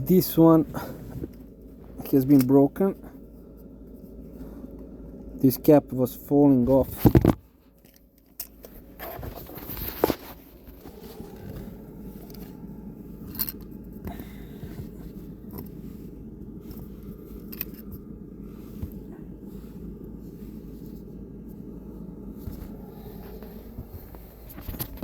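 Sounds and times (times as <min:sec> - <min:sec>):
steady low hum: 0:00.0 - 0:25.0
plastic parts scraping and rustling: 0:06.7 - 0:12.6, 0:16.7 - 0:18.0, 0:22.4 - 0:25.0.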